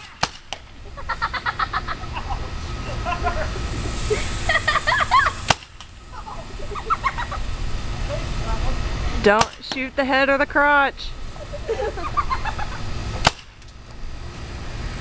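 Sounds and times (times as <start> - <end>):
paintball gun shot: 0.0 - 0.7, 5.4 - 6.0, 9.4 - 9.8, 13.2 - 13.7.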